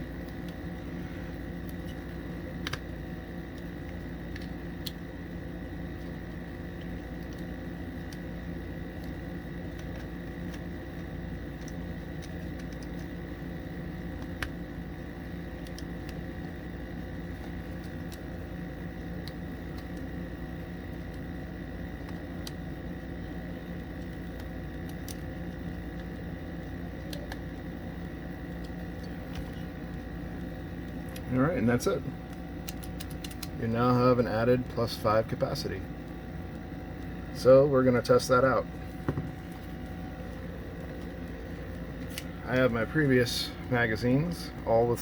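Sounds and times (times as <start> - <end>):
machine hum: 0.0 - 45.0.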